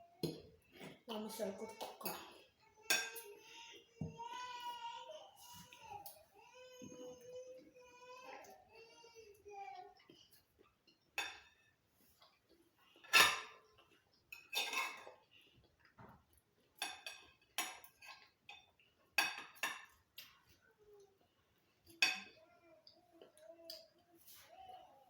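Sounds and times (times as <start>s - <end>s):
plates and cutlery clinking: 0.2s - 4.9s, 10.3s - 20.6s, 21.8s - 22.4s.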